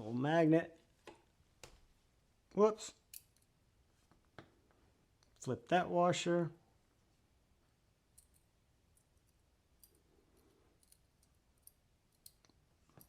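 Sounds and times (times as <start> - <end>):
faint small clicks of knife parts: 3.1 - 3.5, 8.1 - 13.0.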